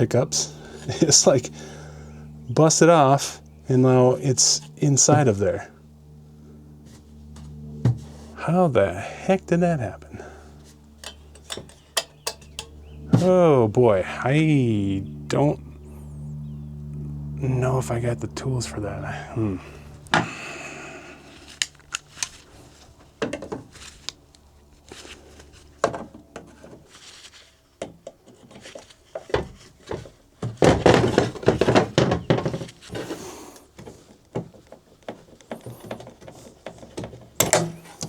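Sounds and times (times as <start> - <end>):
clicks and knocks: 11.0 - 12.8
metal parts clinking and scraping: 11.0 - 12.8.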